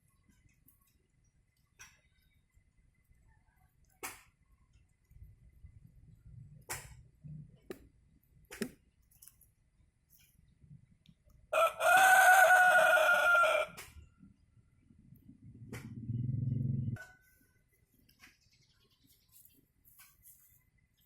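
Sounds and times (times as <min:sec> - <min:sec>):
rooster crowing: 0:11.5 - 0:13.8.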